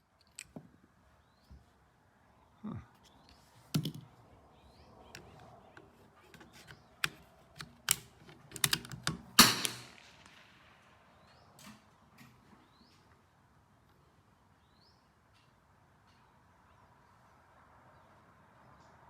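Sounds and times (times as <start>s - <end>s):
rifle bolt clicks and knocks: 0.2s - 0.7s, 3.8s - 4.1s, 5.2s - 10.4s
rifle shot with echo: 9.4s - 11.3s.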